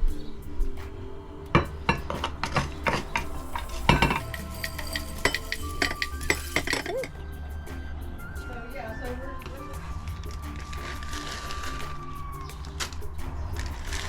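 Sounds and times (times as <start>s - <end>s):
metal utensil scraping a pan: 1.5s - 7.1s.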